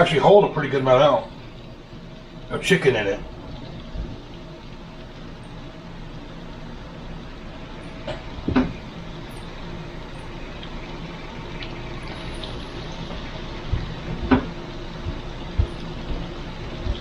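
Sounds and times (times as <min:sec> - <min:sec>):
food sizzling in hot oil: 0:00.0 - 0:17.0
metal clunk of fryer: 0:08.0 - 0:08.8.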